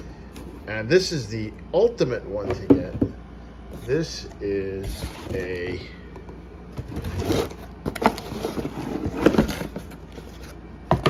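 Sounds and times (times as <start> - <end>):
packaging scraping: 6.7 - 10.6.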